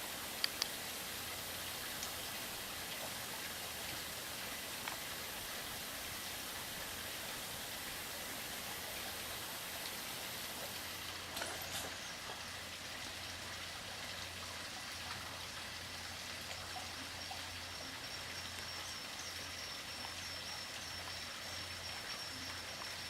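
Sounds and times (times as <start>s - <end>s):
steady hiss: 0.0s - 23.0s
faint clicks: 0.4s - 0.8s, 1.9s - 2.3s.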